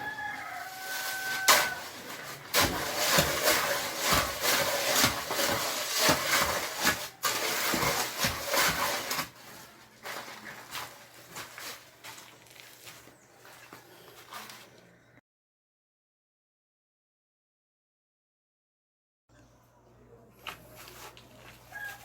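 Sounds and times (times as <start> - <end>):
shovel scraping concrete: 0.6 - 11.8.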